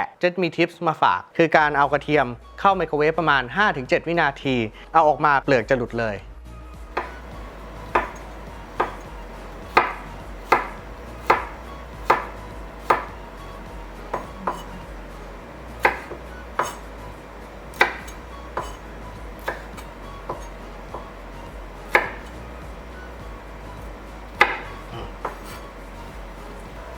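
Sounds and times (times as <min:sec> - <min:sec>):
knife chopping on cutting board: 0:06.9 - 0:25.9.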